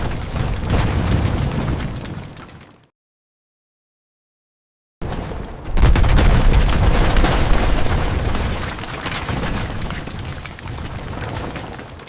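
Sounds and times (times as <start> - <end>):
crackling and crashing debris: 0.0 - 2.9, 5.0 - 12.0
deep explosion rumble: 5.7 - 8.6.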